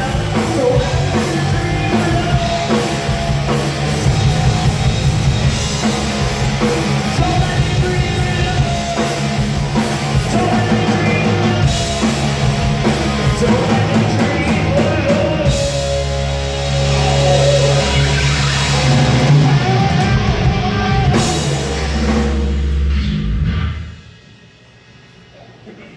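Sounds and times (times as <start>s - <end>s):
person singing: 0.0s - 3.4s, 10.2s - 22.2s
punk rock band playing: 0.0s - 24.1s.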